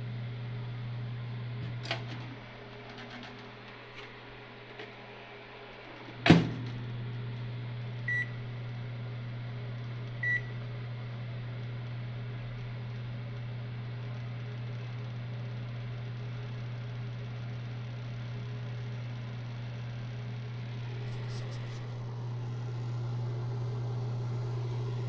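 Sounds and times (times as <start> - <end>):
microwave oven humming: 0.0 - 25.0
loud clunk: 6.2 - 6.9.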